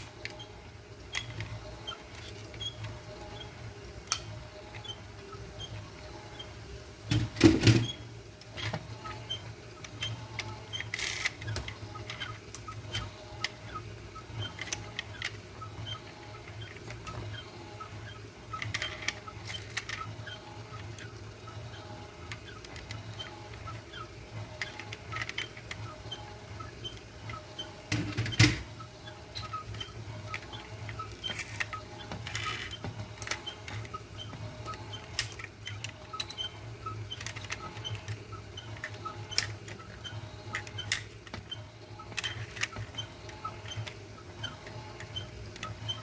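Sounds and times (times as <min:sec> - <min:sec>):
toy cars clicking and rattling: 0:07.1 - 0:26.3, 0:29.3 - 0:46.0.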